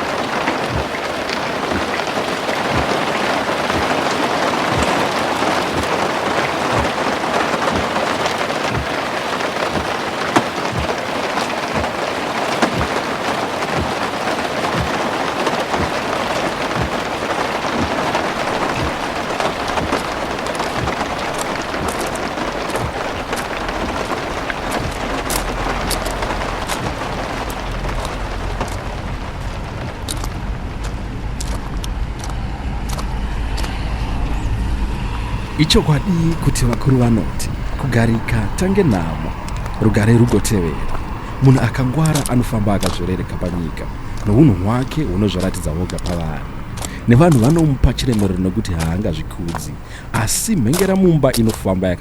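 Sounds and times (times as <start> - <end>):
heavy rain falling: 0.0 - 52.0
low rumble: 18.3 - 48.1.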